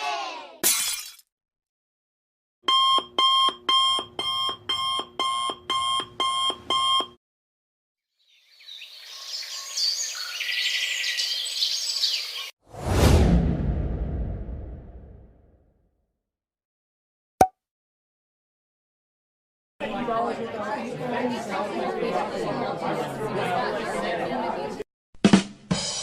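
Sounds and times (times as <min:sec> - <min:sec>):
alarm clock beeping: 0:02.7 - 0:07.1
loud deep boom: 0:12.8 - 0:15.5.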